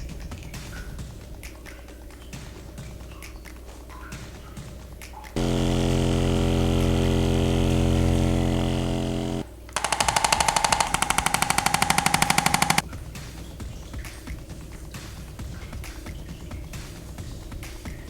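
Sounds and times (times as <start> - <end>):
fast rattling pulse: 5.4 - 12.8
steady mechanical buzz: 5.4 - 12.8.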